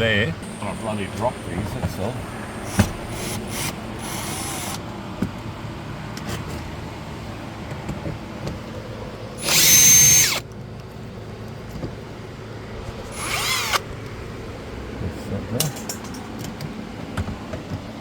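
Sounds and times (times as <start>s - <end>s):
power drill whirring: 0.5s - 4.8s, 9.4s - 10.4s, 13.0s - 13.9s.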